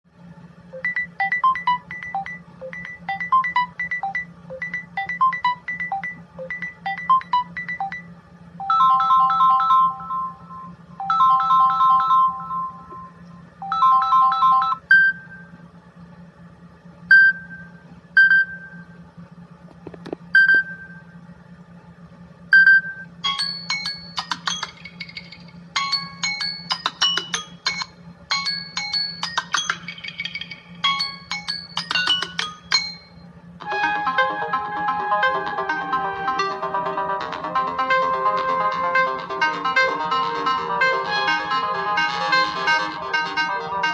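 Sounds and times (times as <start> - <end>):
steady low hum: 0.1 - 43.9
electronic ringtone melodies: 0.8 - 15.5, 22.6 - 43.9
high chimes: 23.3 - 33.3.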